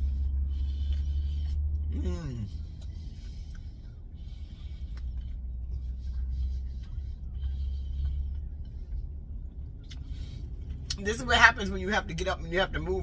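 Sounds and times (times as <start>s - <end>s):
crunching and chewing: 0.0s - 11.0s
steady low rumble: 0.0s - 13.0s.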